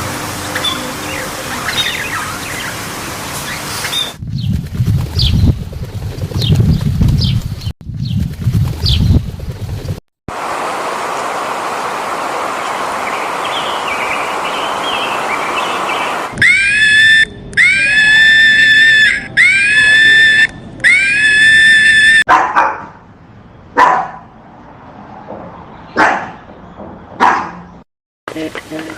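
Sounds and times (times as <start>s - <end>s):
steady hiss: 10.3s - 16.3s.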